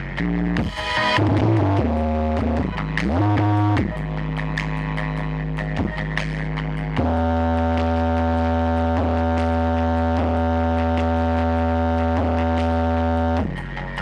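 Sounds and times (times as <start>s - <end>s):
deep bass chord: 0.0s - 14.0s
electronic dance music: 0.0s - 14.0s.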